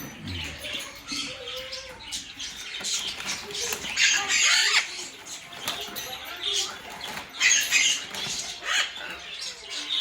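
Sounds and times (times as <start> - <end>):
parrots squawking and chattering: 0.0 - 10.0.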